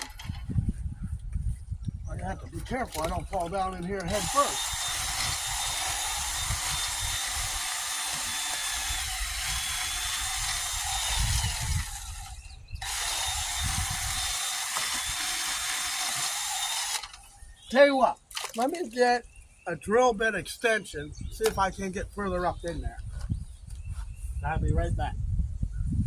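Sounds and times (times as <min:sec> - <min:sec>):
electric drill boring into pipe: 0:04.0 - 0:17.3.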